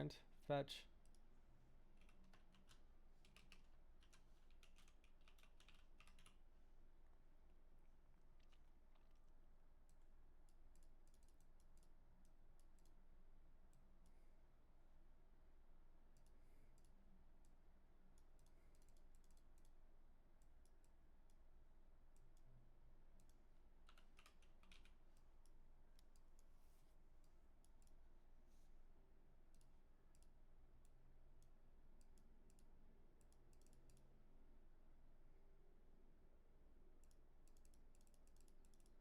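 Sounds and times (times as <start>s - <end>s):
mouse and keyboard clicks: 23.2s - 26.5s.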